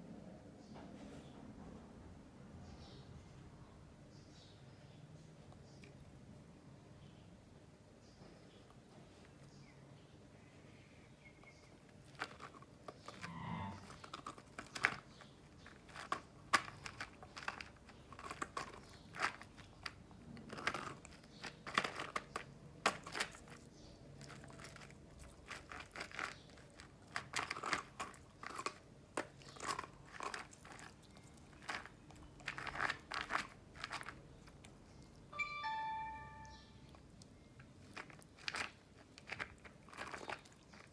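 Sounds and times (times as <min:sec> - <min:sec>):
dog crunching ice cubes: 0:11.6 - 0:35.3, 0:36.9 - 0:40.9.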